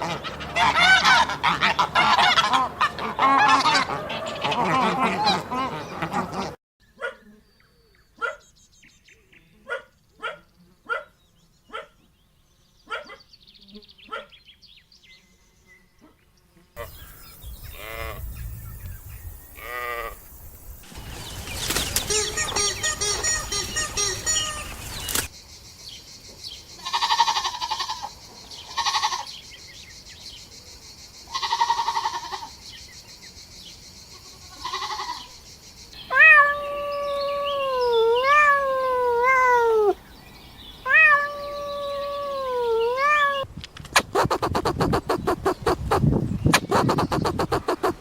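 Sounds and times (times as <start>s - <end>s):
goats bleating: 26.8s - 28.0s.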